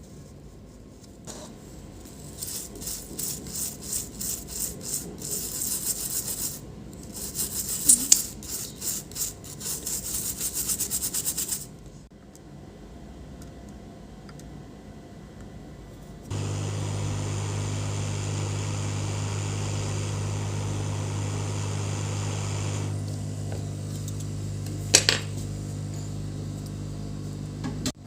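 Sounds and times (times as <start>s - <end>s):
hiss of blowing air: 16.3s - 23.0s
hot air station fan hum: 16.3s - 28.0s.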